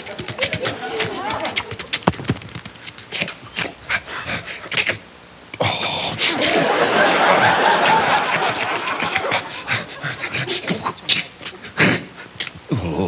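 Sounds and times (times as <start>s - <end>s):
studio audience laughing: 0.0s - 2.0s, 6.2s - 11.0s.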